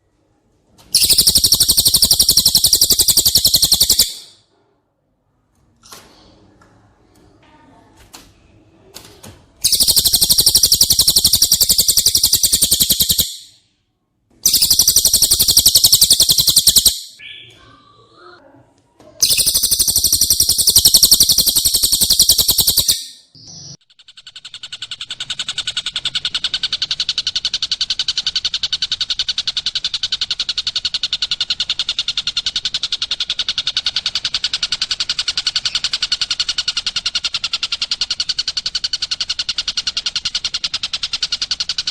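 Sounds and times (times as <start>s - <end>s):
bird trilling rapidly: 0.9s - 4.4s, 9.6s - 13.6s, 14.4s - 17.5s, 19.2s - 41.9s.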